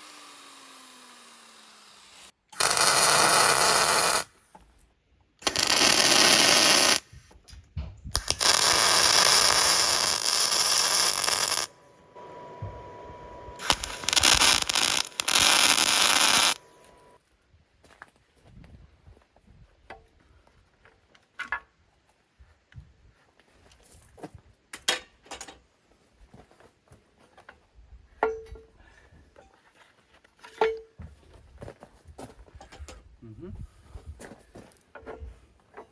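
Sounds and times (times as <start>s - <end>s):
angle grinder grinding steel: 0.0s - 4.3s, 5.4s - 7.0s, 8.2s - 17.2s.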